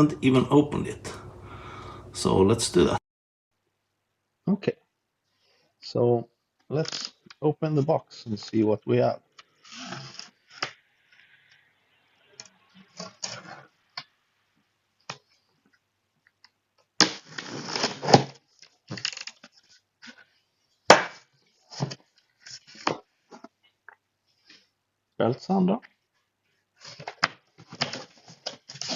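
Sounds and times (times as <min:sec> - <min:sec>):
cardboard and packaging crackles: 0:17.2 - 0:19.6
sharp crack: 0:20.9 - 0:21.2.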